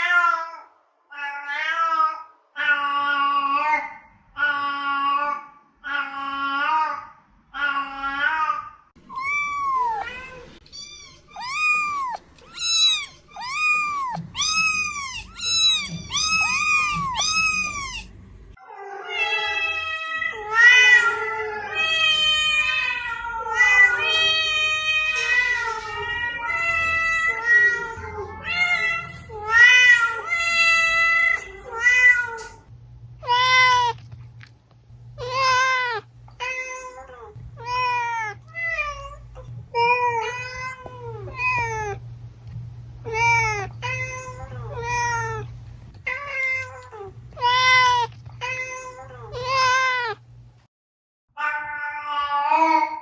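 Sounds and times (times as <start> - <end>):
cat meowing: 7.6 - 18.1, 18.7 - 32.6, 33.2 - 34.1, 35.2 - 42.0, 43.0 - 50.2.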